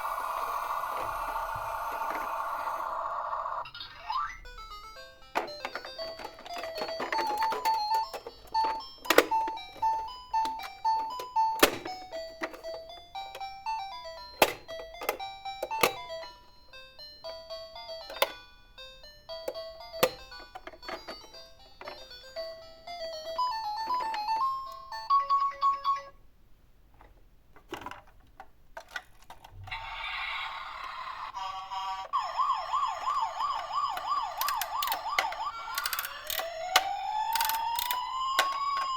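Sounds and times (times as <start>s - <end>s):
toy siren wailing: 0.0s - 4.4s, 29.7s - 38.9s
toy electronic beeping jingle: 22.2s - 26.2s, 31.2s - 38.9s.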